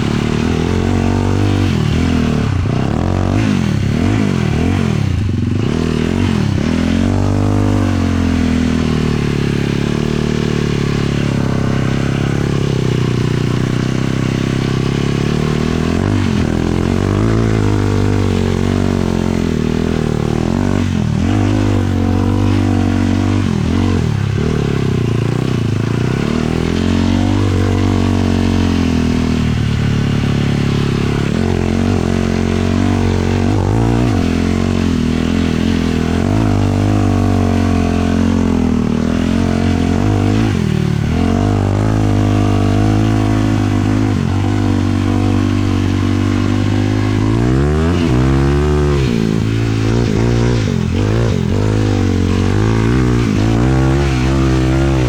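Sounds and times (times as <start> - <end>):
quad engine revving: 0.0 - 55.0.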